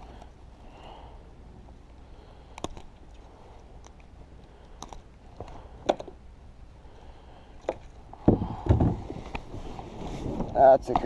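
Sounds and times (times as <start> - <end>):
fishing gear clicks and knocks: 2.5 - 6.2.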